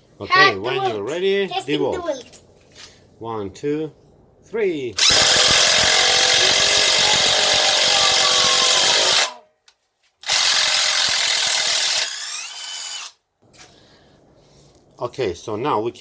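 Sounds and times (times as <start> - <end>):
impact driver rattling: 5.0 - 9.4, 10.2 - 13.1.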